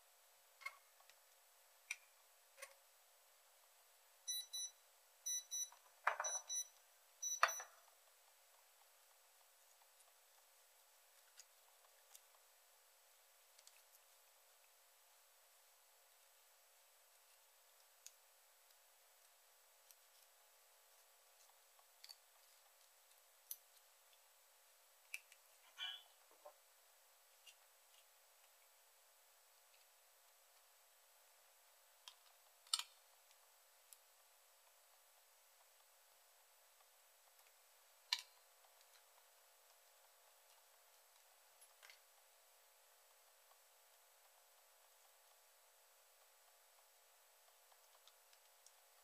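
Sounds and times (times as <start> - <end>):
small parts clicking: 32.0 - 33.0.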